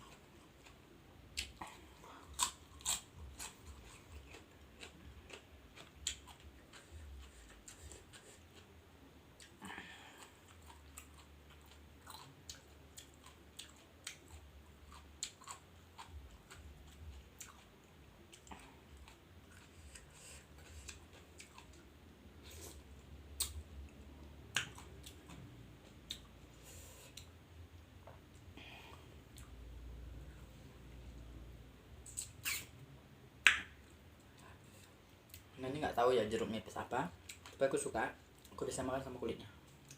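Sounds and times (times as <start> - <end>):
person chewing food: 0.0 - 27.4, 28.0 - 30.9, 37.2 - 37.6.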